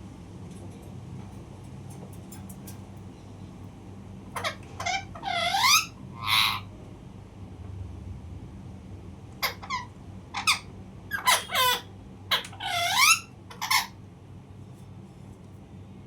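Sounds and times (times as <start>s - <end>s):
parrot squeaky calls: 4.4s - 6.7s, 9.4s - 14.0s.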